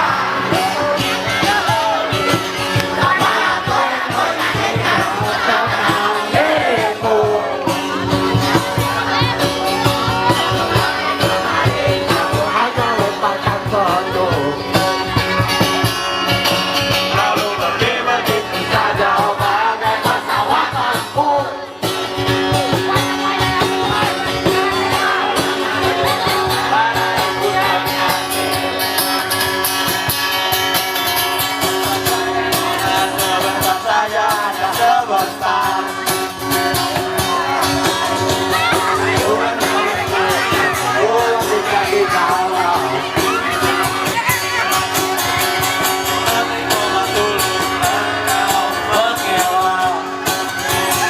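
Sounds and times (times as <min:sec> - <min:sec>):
person singing: 0:00.0 - 0:15.1, 0:16.9 - 0:21.7, 0:31.5 - 0:51.0
guitar accompaniment: 0:00.0 - 0:51.0.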